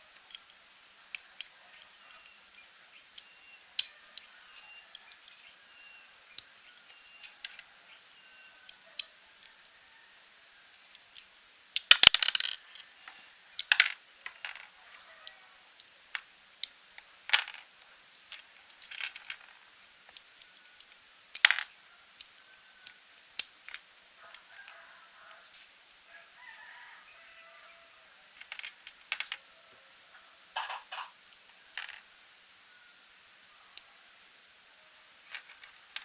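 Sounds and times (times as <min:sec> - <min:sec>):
plastic bricks clicking and clattering: 0:06.3 - 0:07.6, 0:11.8 - 0:12.8, 0:13.6 - 0:23.9, 0:28.4 - 0:29.5, 0:30.6 - 0:32.1, 0:35.2 - 0:36.0.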